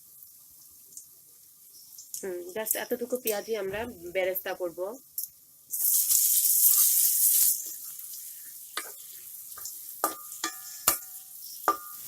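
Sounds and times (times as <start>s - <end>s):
onions sizzling in oil: 0.0s - 12.0s
spoon clinking against pan: 9.6s - 12.0s.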